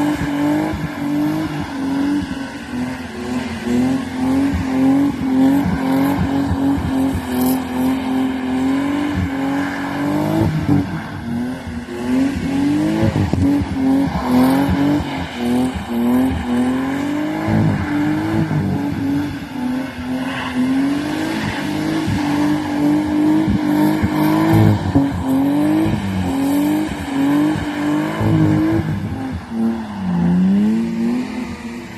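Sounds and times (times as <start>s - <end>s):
car engine revving: 0.0s - 31.9s.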